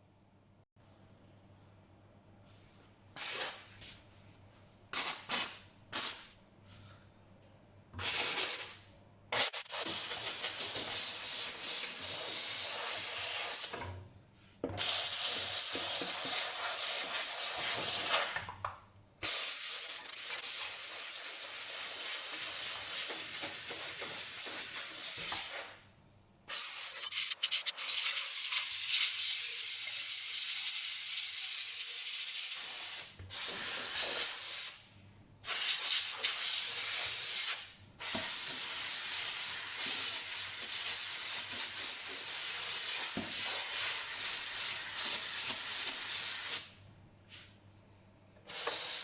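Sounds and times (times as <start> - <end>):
steam cleaner hissing: 9.4 - 13.7, 14.8 - 18.2, 19.2 - 25.8, 35.4 - 46.7, 48.5 - 49.0.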